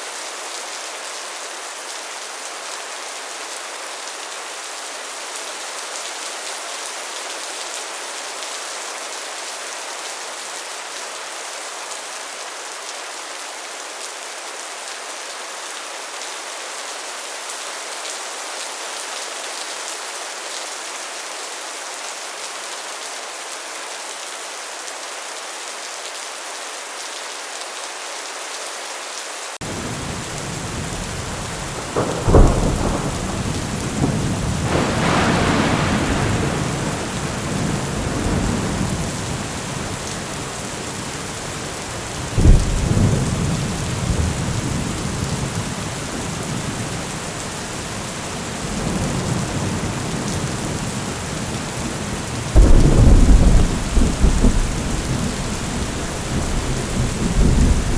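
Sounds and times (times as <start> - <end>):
heavy rain on a metal roof: 0.0 - 57.9
loud thunderclaps: 29.6 - 41.4, 42.2 - 47.0, 52.6 - 57.9
thunder rumbling: 29.6 - 57.9.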